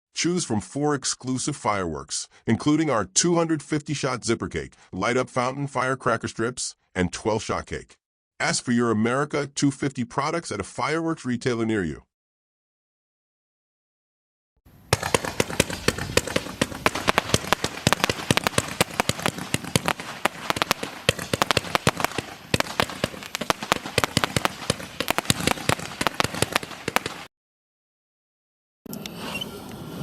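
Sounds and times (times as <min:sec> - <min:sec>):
firecrackers crackling: 0:14.7 - 0:27.3.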